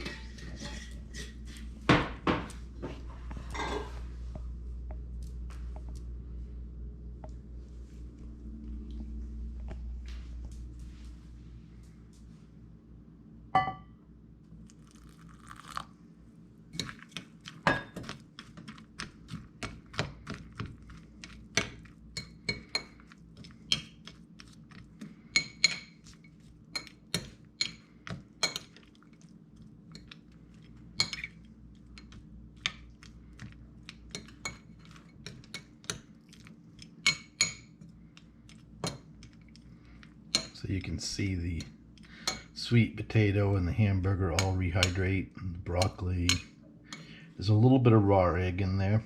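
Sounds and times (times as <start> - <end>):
spoon stirring and scraping dish: 0.0 - 1.9, 2.8 - 4.1, 16.7 - 42.6, 43.6 - 47.2.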